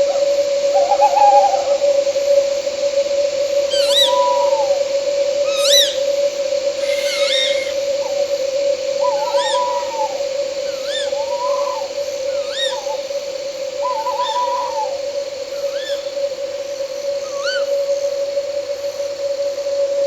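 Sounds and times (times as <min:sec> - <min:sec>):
night insects droning: 0:00.0 - 0:20.0
owl calling: 0:03.6 - 0:16.3, 0:17.2 - 0:17.8.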